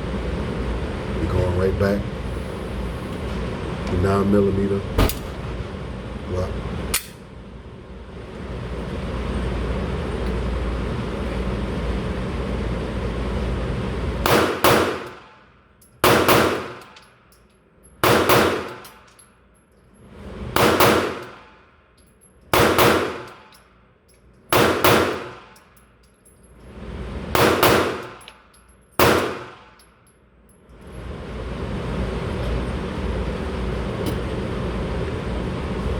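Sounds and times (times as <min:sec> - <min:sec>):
steady rumbling noise: 0:00.0 - 0:15.3
pistol shots: 0:05.0 - 0:05.4, 0:14.3 - 0:15.2, 0:16.0 - 0:17.0, 0:18.0 - 0:18.9, 0:20.6 - 0:21.4, 0:22.6 - 0:23.4, 0:24.5 - 0:25.6, 0:27.4 - 0:28.2, 0:29.0 - 0:29.8.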